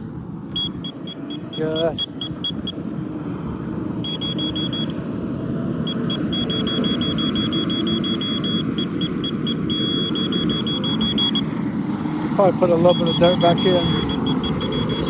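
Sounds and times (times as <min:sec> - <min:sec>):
diesel engine running: 0:00.0 - 0:15.0
short held beep tone: 0:00.6 - 0:02.8, 0:04.0 - 0:05.0, 0:05.9 - 0:11.5, 0:12.7 - 0:15.0
quick high beeps: 0:04.0 - 0:05.0, 0:05.9 - 0:11.5, 0:12.7 - 0:15.0.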